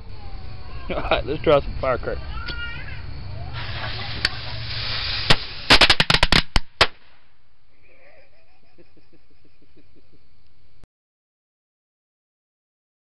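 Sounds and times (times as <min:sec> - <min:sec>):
firecrackers going off: 0:03.4 - 0:07.4.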